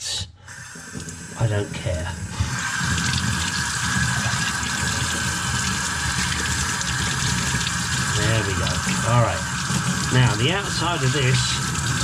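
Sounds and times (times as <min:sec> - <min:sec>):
water running from a tap: 0:00.5 - 0:12.0.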